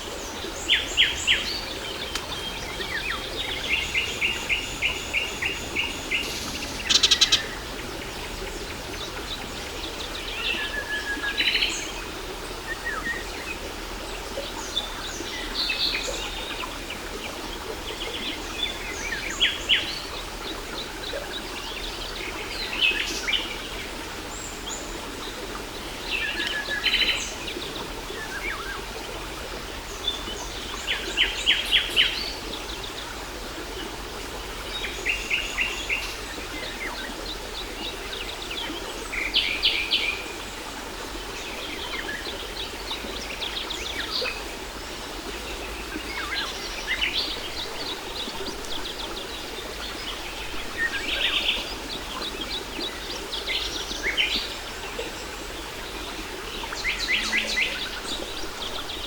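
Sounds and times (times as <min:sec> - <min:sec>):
birds singing and calling: 0:00.1 - 0:33.2, 0:34.3 - 0:59.0.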